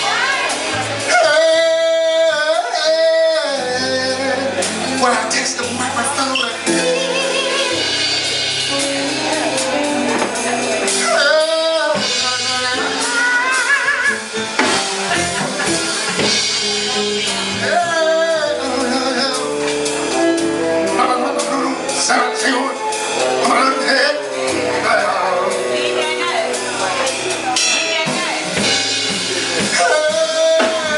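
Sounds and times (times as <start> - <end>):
people speaking: 0.0 - 7.9, 23.4 - 30.9
person singing with vibrato: 0.0 - 14.5, 15.8 - 30.9
slow r and b music: 0.0 - 30.9.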